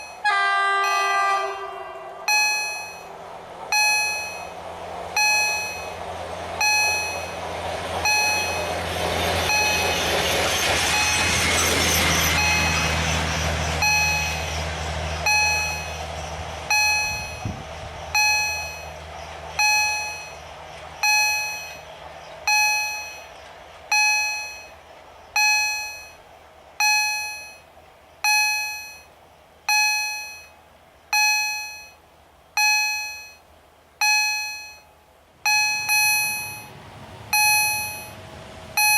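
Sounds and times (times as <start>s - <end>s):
level crossing warning gong: 0.0s - 23.3s, 32.6s - 38.9s
rail vehicle rumbling past: 0.0s - 38.9s.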